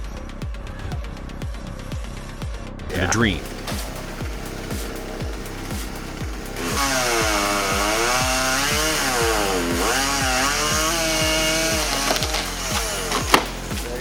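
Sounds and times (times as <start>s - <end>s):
music with thumping beat: 0.0s - 14.0s
chainsaw running at high revs: 3.4s - 14.0s.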